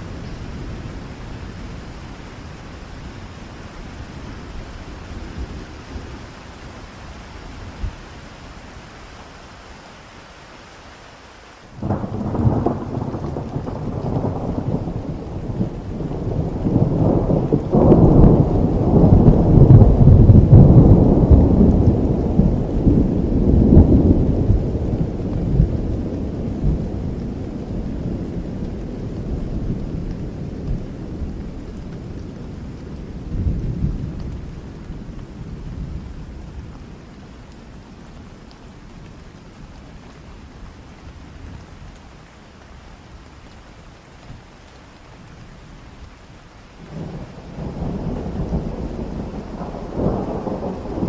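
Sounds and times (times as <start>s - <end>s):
steady rain: 0.0s - 51.0s
rolling thunder: 11.8s - 36.8s, 46.8s - 51.0s.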